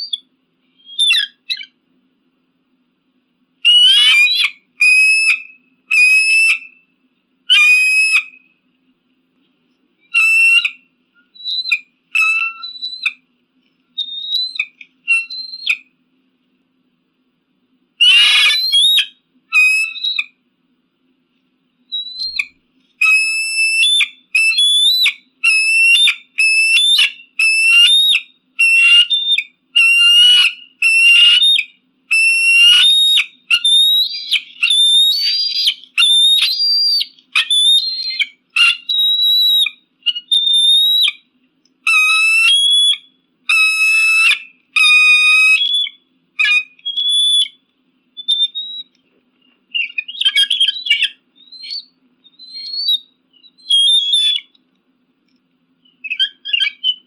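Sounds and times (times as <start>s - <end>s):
eagle calling: 0.0s - 1.8s, 3.6s - 6.8s, 7.5s - 8.5s, 10.0s - 13.2s, 14.0s - 15.9s, 18.0s - 20.4s, 21.9s - 47.6s, 48.2s - 54.6s, 55.8s - 57.0s.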